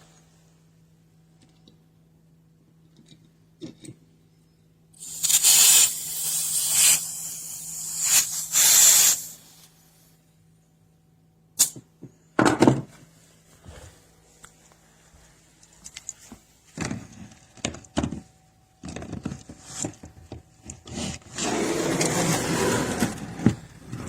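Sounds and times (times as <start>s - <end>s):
pressurised gas hissing: 5.0s - 9.8s.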